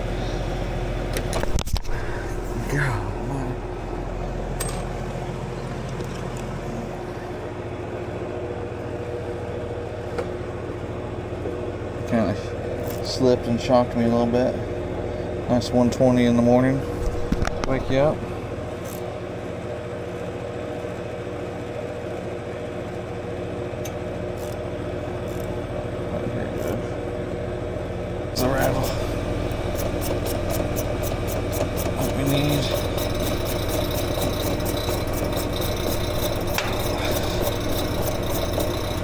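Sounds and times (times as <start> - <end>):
air conditioner humming: 0.0 - 39.0.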